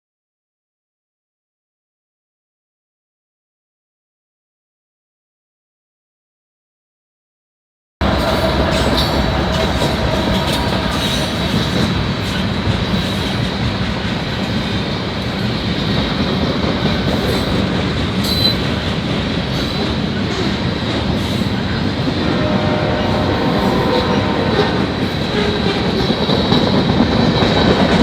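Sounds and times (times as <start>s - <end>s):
high wheel squeal: 8.0s - 13.4s
freight train rolling past: 8.0s - 28.0s.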